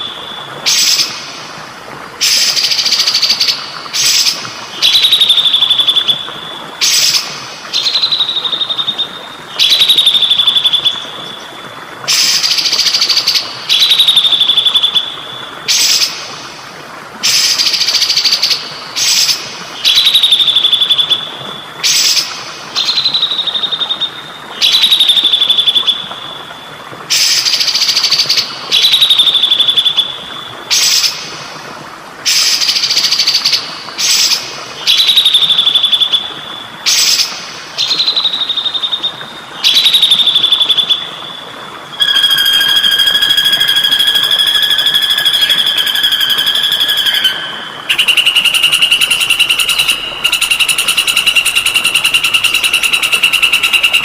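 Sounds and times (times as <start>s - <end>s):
water trickling: 0.0s - 54.0s
songbird calling: 41.9s - 54.0s
bird high trill: 42.0s - 54.0s.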